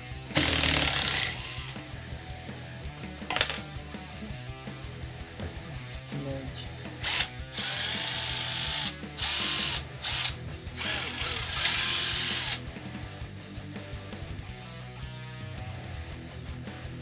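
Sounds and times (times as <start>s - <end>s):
guitar music: 0.0s - 17.0s
impact driver rattling: 0.4s - 1.9s, 3.3s - 3.8s, 7.0s - 12.7s.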